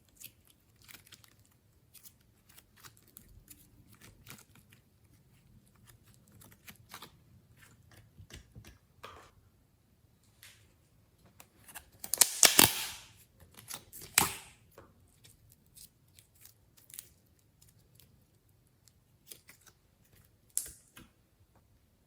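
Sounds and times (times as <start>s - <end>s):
sticky crackles: 0.0s - 8.1s, 11.6s - 14.5s
slime squished by hand: 12.0s - 13.1s.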